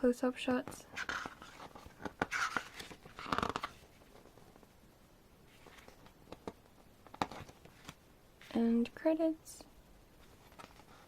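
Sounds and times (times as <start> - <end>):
paper pages rustling: 0.9 - 4.6, 5.5 - 8.6, 10.2 - 11.0.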